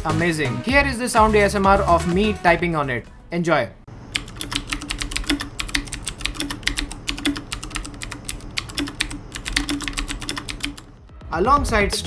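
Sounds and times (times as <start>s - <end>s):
clicky mechanical keyboard typing: 4.1s - 10.9s.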